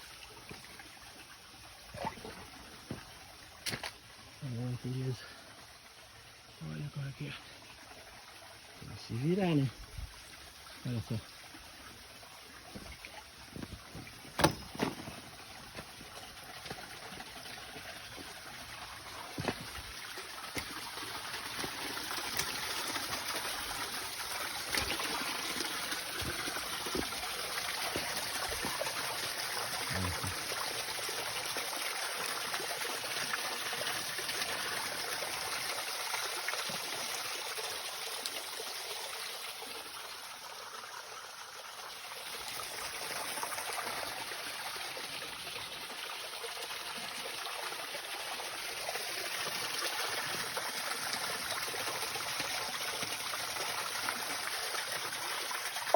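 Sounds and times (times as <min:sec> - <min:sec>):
stream water trickling: 0:00.0 - 0:55.9
sharp knocks: 0:14.4 - 0:15.2.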